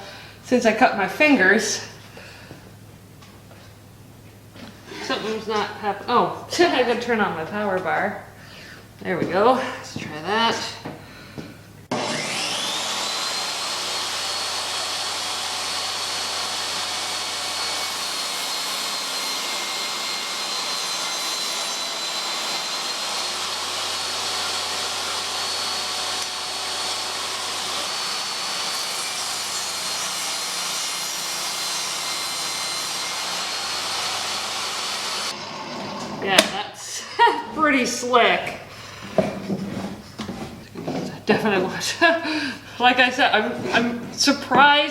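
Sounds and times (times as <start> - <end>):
table saw motor whining: 11.9 - 36.2.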